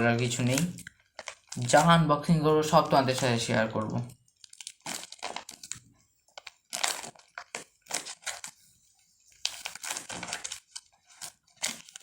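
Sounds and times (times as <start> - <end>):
package wrapping torn open: 4.4 - 8.6, 9.4 - 12.0.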